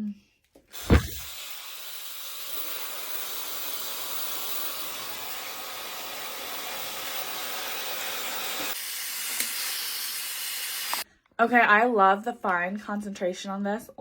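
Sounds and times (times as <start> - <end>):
hair dryer blowing air: 0.8 - 11.0.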